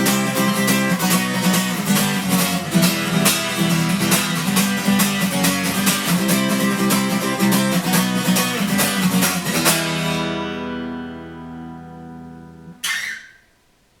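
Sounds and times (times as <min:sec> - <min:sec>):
acoustic guitar strumming: 0:00.0 - 0:13.7
short scratchy sound: 0:12.8 - 0:13.5.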